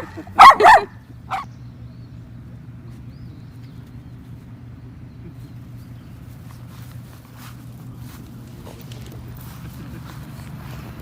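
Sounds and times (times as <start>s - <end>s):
dog barking: 0.0s - 1.5s.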